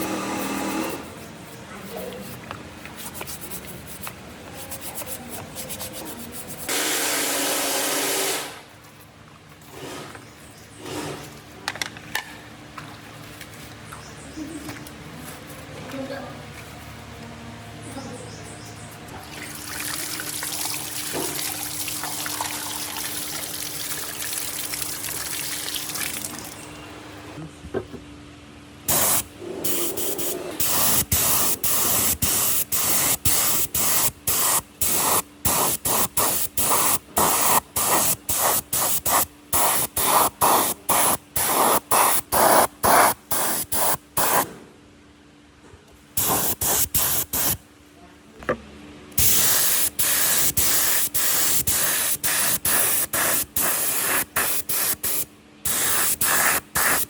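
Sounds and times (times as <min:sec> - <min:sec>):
hissing nozzle spray: 0:28.9 - 0:44.4, 0:46.2 - 0:47.6, 0:49.2 - 0:57.0.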